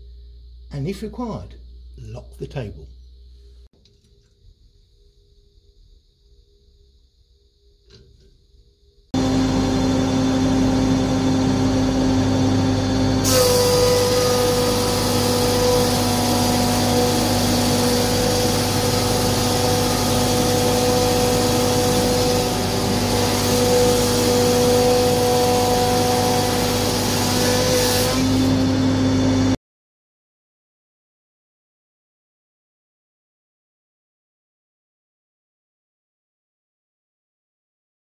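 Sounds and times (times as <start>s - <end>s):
planer cutting board: 9.2s - 29.6s
planer motor humming: 9.2s - 29.6s.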